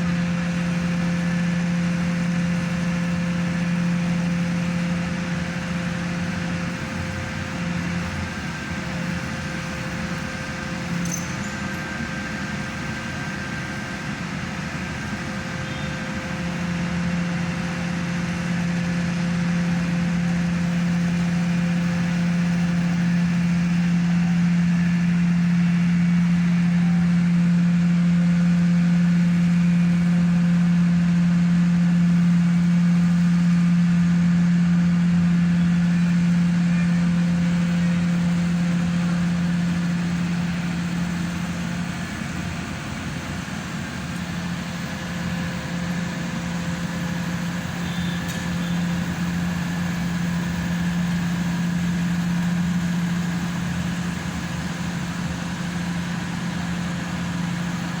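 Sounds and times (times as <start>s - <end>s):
hydraulic machine engine humming: 0.0s - 58.0s.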